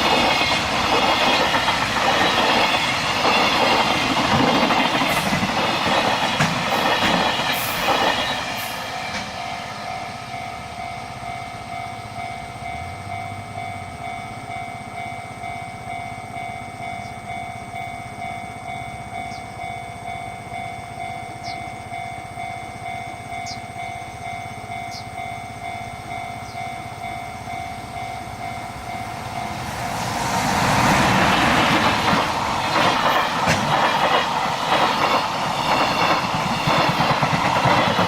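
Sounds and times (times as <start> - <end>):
train wagons clattering on rails: 0.0 - 10.9, 24.2 - 38.0
level crossing alarm ringing: 32.0 - 38.0.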